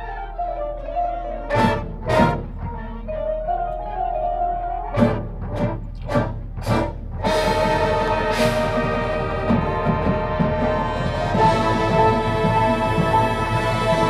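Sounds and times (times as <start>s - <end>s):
marching band brass over drums: 1.5s - 3.0s, 5.0s - 14.0s.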